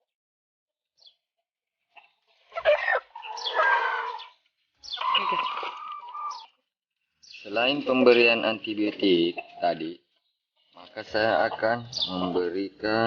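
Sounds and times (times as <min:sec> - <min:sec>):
chicken squawking: 0:01.9 - 0:06.6.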